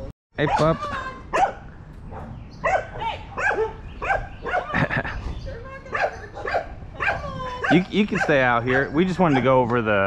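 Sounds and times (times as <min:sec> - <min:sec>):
dog barking high-pitched: 0:01.3 - 0:04.7, 0:05.9 - 0:09.5.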